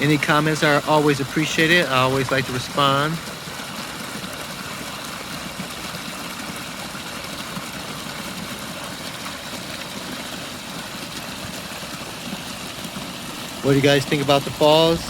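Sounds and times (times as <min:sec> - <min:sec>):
waterfall cascading over rocks: 0:00.0 - 0:15.0.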